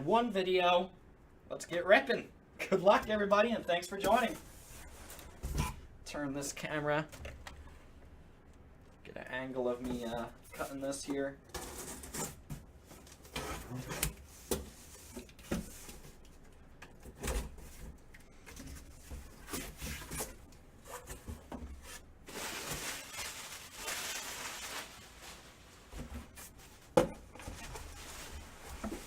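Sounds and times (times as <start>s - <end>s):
scraping and rustling: 17.2s - 29.0s.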